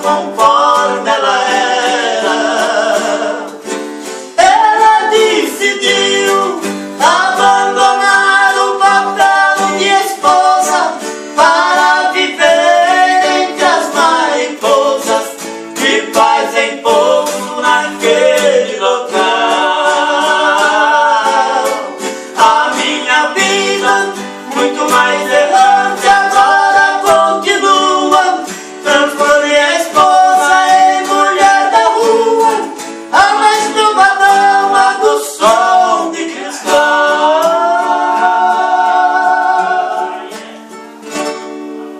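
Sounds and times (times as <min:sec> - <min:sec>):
duo singing: 0:00.0 - 0:41.9
plucked steel-string guitar: 0:00.0 - 0:41.9.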